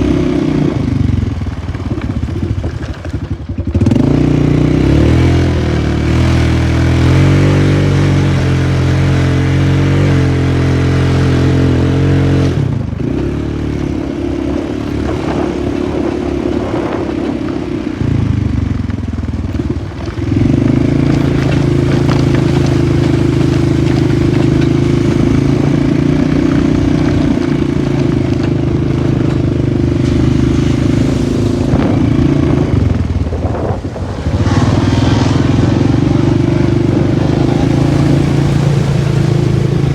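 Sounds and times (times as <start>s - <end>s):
atv engine running: 0.0s - 39.9s
rattling and clatter: 14.5s - 39.9s.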